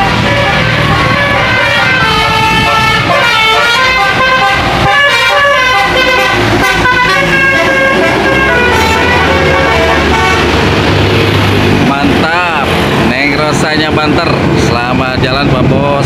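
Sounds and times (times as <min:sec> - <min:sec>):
musical air horn playing a tune: 0:00.0 - 0:10.7
bus engine running: 0:00.0 - 0:16.0.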